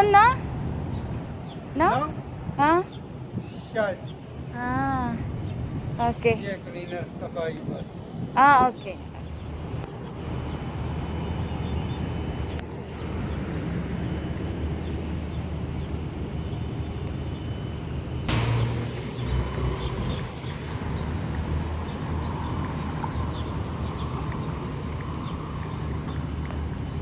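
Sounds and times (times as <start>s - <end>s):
outdoor rumble: 4.2s - 27.0s
low motor hum: 7.9s - 27.0s.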